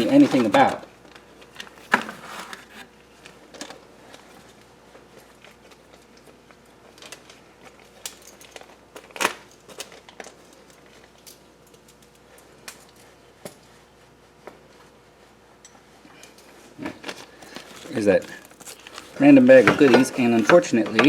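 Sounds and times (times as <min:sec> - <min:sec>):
plastic bag rustling: 0:01.7 - 0:02.9, 0:17.0 - 0:20.9
small parts clicking and clattering: 0:06.9 - 0:13.0.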